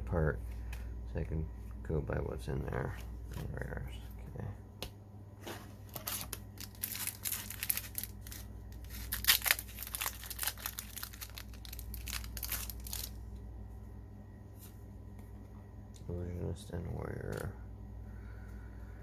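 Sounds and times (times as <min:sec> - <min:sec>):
plastic wrapper crinkling and tearing: 0:05.9 - 0:13.2.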